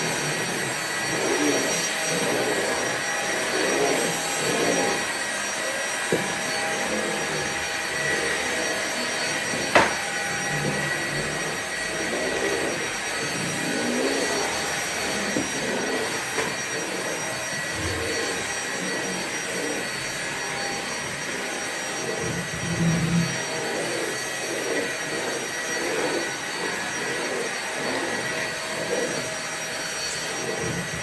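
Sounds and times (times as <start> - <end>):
vacuum cleaner running: 0.0 - 31.0.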